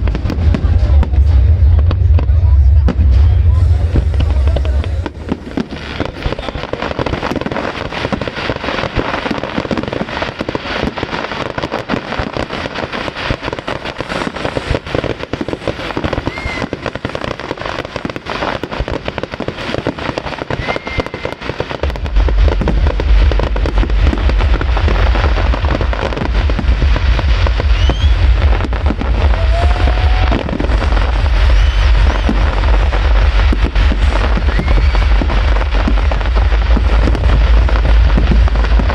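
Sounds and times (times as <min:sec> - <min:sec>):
fireworks crackling and popping: 0:00.0 - 0:38.9
low fireworks booms: 0:00.0 - 0:38.9
fireworks rising whistles: 0:13.4 - 0:18.5, 0:19.3 - 0:38.9.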